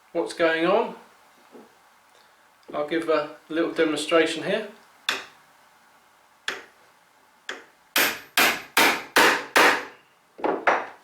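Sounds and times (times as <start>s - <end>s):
hammer striking chisel in wood: 6.5s - 6.7s, 7.5s - 10.9s.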